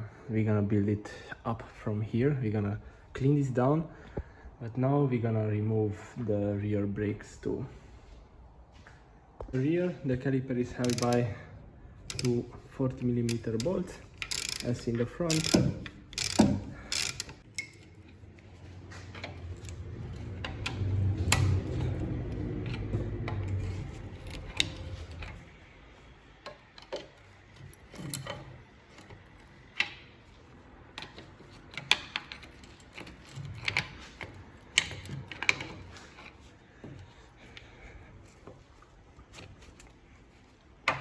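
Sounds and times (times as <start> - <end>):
metallic clicks and clinks: 10.8 - 11.2, 12.1 - 12.4, 13.2 - 18.2
ratchet wrench clicking: 10.8 - 11.2, 12.1 - 12.4, 13.3 - 17.9.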